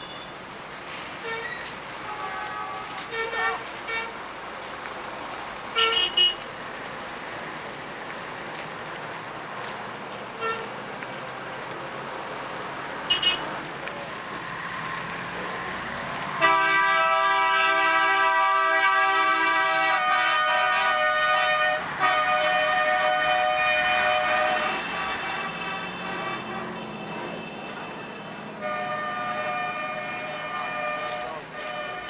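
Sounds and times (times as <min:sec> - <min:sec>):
traffic hum: 0:00.0 - 0:32.0
long multi-toned horn: 0:01.2 - 0:04.1, 0:16.4 - 0:32.0
short vehicle horn toots: 0:05.8 - 0:06.4, 0:13.1 - 0:13.5.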